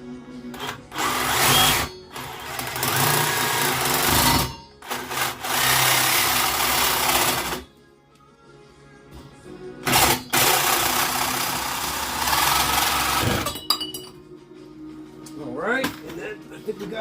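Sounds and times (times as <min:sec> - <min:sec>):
power saw cutting pipe: 0:00.6 - 0:07.6, 0:09.9 - 0:13.4.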